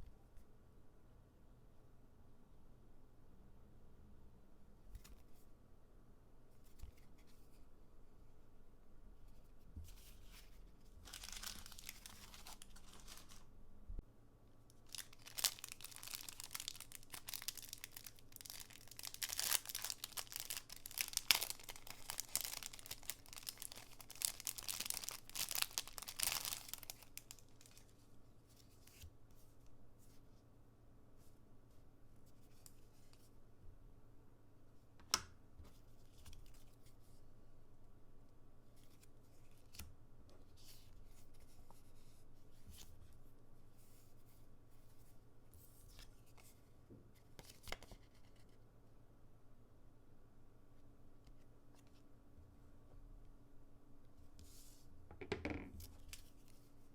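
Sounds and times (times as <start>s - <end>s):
packaging tearing and crinkling: 11.1s - 13.4s, 14.9s - 27.8s.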